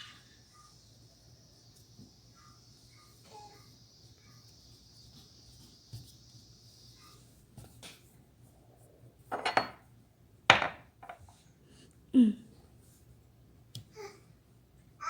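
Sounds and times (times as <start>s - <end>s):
objects clattering: 9.3s - 9.8s.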